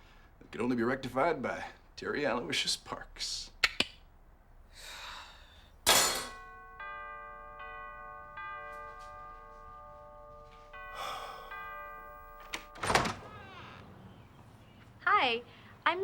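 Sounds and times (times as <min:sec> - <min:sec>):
doorbell chime ringing: 0:06.3 - 0:14.3.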